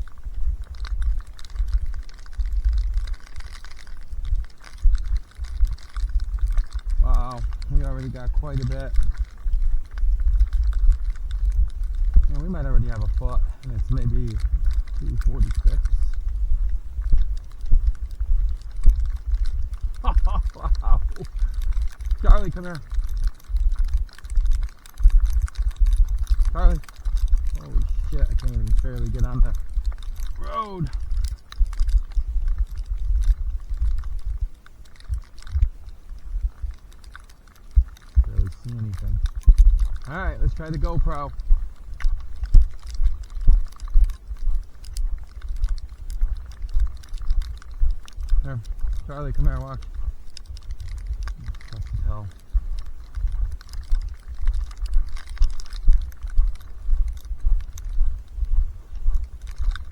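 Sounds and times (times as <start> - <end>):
footsteps crunching in snow: 0.0 - 59.9
wind buffeting microphone: 0.0 - 59.9.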